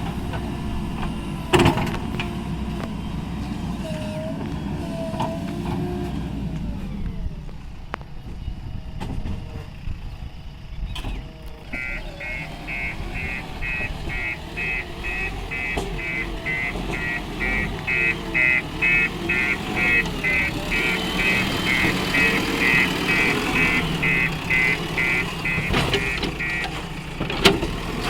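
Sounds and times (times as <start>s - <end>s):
heavy diesel engine running: 0.0s - 10.6s, 11.4s - 28.0s
reversing alarm beeping: 11.7s - 26.8s.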